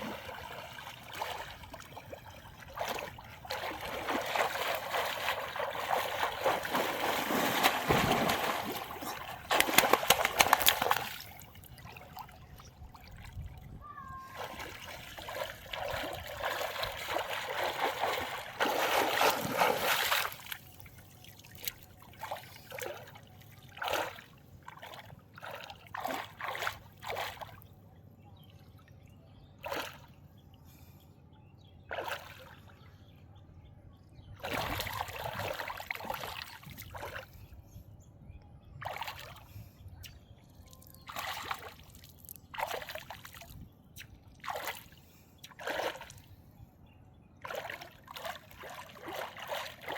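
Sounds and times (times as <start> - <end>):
water splashing: 0.0 - 12.4, 14.3 - 23.2, 23.8 - 27.6, 47.4 - 49.9.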